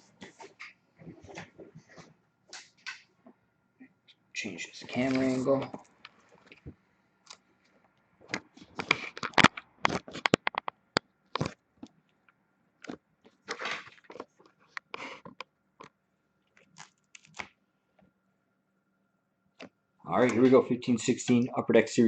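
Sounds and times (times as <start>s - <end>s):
shrink wrap crackling and tearing: 16.6s - 17.5s.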